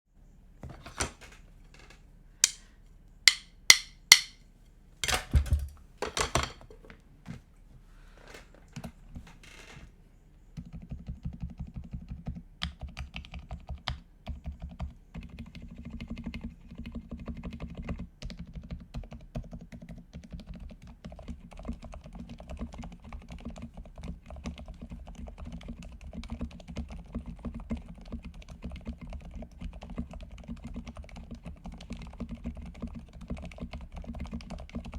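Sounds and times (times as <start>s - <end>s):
mechanical keyboard typing: 10.6s - 34.9s.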